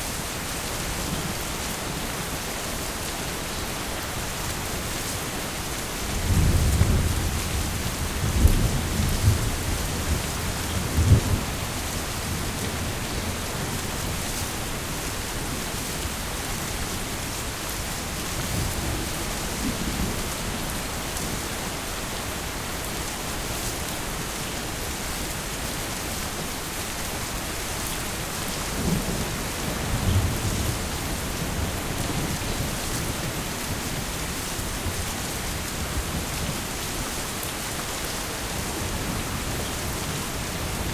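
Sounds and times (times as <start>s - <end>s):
heavy rain falling: 0.0s - 40.9s
thunder rumbling: 5.8s - 37.5s.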